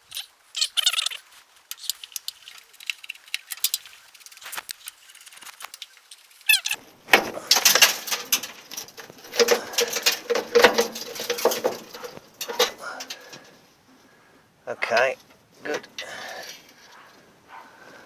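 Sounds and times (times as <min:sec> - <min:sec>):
screws squeaking and scraping: 0:00.0 - 0:13.4.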